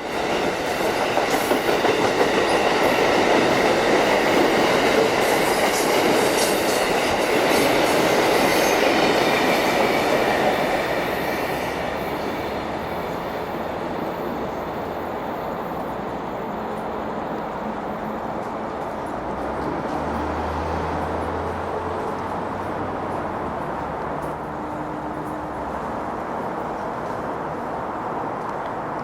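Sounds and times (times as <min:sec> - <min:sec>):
train wheels clicking over rail joints: 0:00.1 - 0:13.6.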